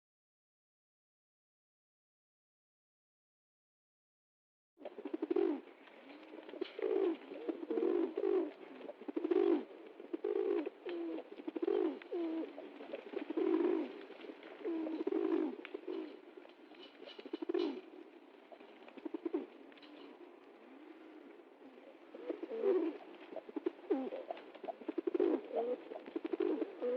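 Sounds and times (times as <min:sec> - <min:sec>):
pigeon cooing: 0:04.8 - 0:26.9.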